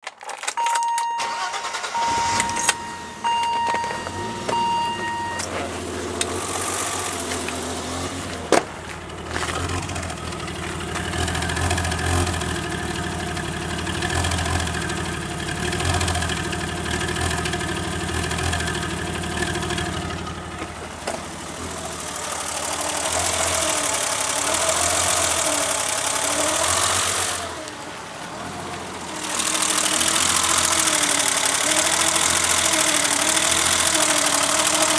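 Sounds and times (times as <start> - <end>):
beeping tone: 0.6 - 5.8
car engine idling roughly: 5.6 - 34.9.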